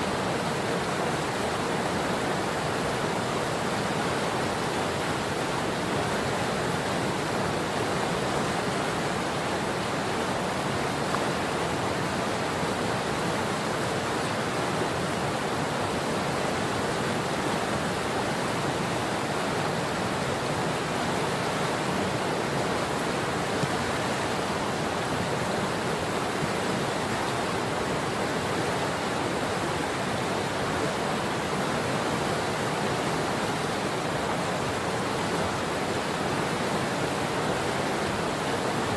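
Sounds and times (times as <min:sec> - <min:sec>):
river water rushing: 0:00.0 - 0:38.9.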